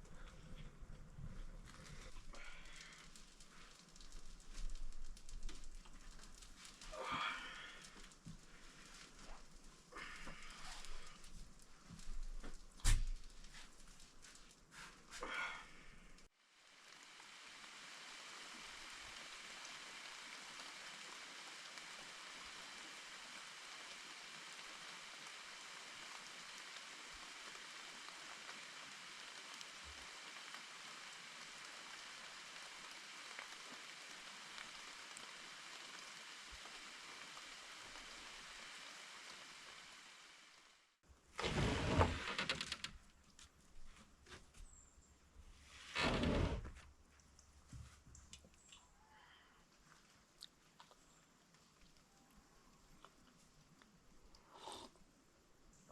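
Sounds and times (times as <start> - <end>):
water hissing: 1.4 - 40.6, 54.3 - 55.0.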